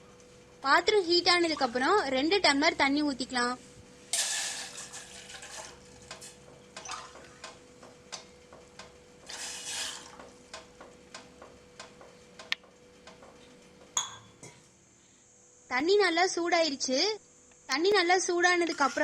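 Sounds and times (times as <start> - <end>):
water sizzling in pan: 4.1 - 6.4, 9.2 - 10.2.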